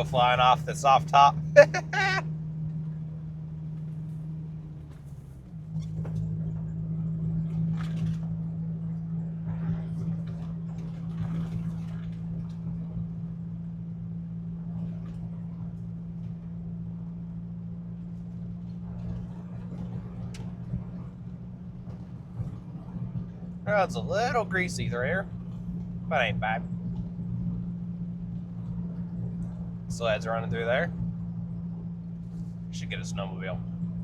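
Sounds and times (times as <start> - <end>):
car engine running inside cab: 0.0 - 34.0.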